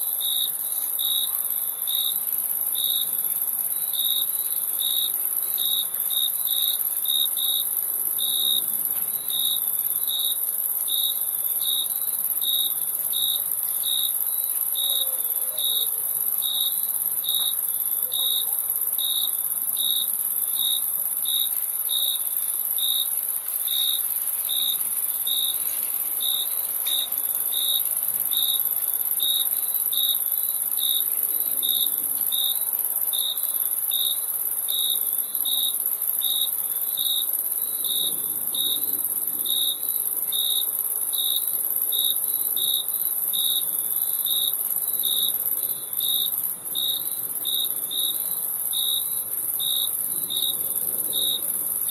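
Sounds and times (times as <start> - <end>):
crickets chirping: 0.0 - 51.9
high-pitched insect trill: 0.1 - 51.9.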